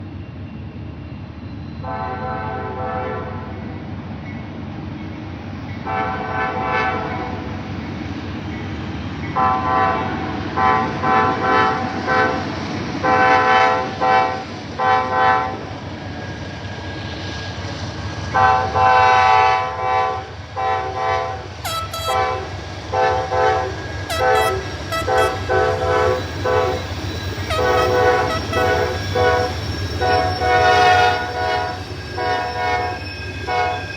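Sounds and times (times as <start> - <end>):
passing train rumble: 0.0 - 33.9
locomotive horn blasts: 18.4 - 32.8.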